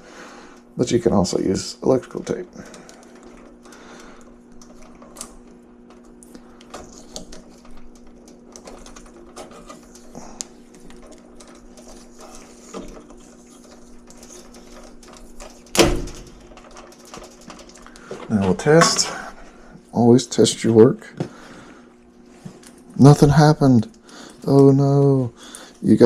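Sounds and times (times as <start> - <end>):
steady low hum: 0.0 - 26.0
small clicks and crackles: 2.0 - 18.6.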